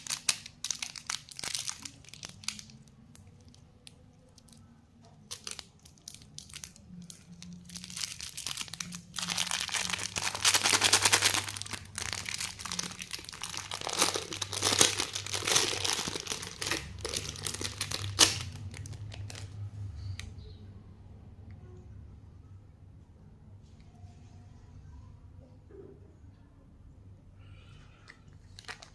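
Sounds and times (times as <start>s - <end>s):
plastic wrapper crinkling: 0.0s - 20.3s, 28.1s - 28.9s.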